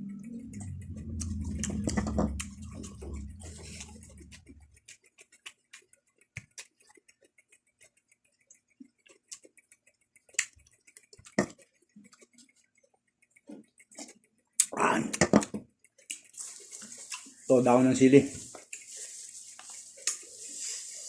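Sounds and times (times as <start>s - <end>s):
low rumble: 0.0s - 4.8s
chewing crisp leaves: 0.5s - 7.1s, 18.4s - 21.0s.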